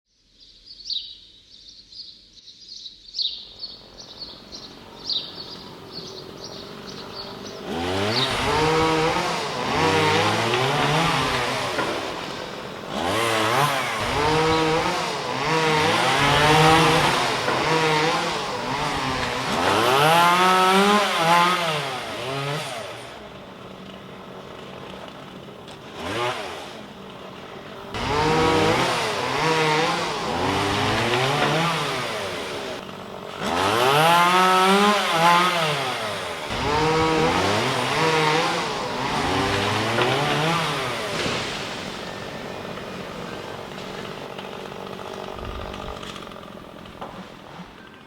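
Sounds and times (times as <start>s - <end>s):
birds chirping: 0.2s - 10.2s
chainsaw revving: 5.0s - 48.0s.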